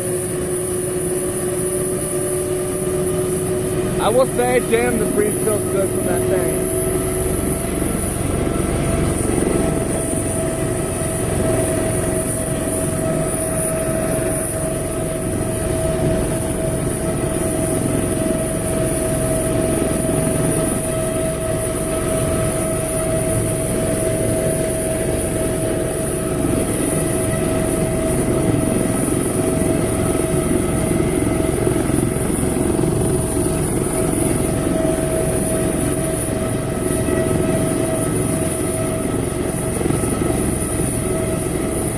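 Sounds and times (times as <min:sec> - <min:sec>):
helicopter turbine whine: 0:00.0 - 0:41.9.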